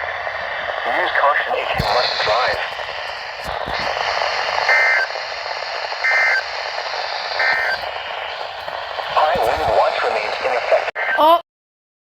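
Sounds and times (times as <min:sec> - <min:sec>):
radio static: 0:00.0 - 0:11.4
two-tone digital squawks: 0:04.7 - 0:05.1, 0:06.0 - 0:06.5, 0:07.4 - 0:07.8.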